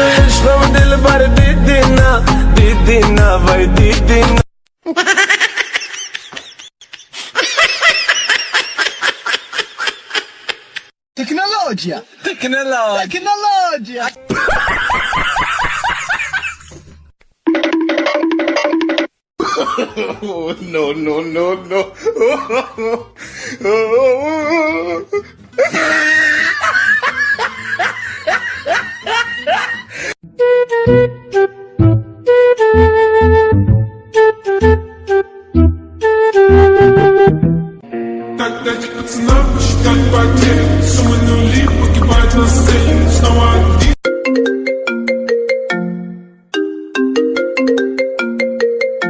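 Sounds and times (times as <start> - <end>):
music: 0.0 - 4.4, 30.2 - 49.0.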